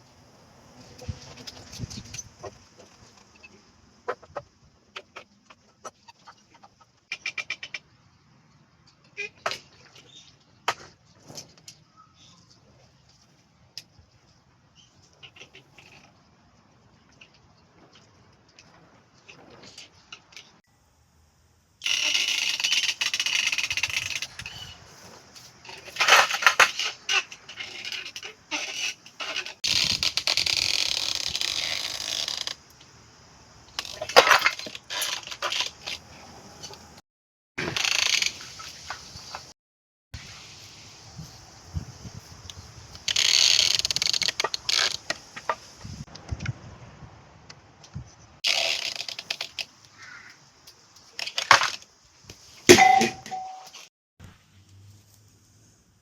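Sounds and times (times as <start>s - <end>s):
hardware clinking and knocking: 52.7s - 53.8s
sharp metallic clank: 52.7s - 53.8s.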